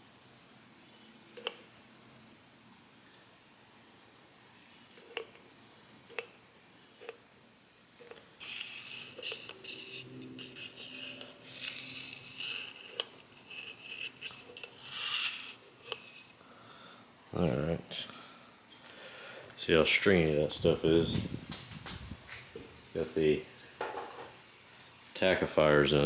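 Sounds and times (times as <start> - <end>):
oil rubbing and squishing: 8.4 - 16.4.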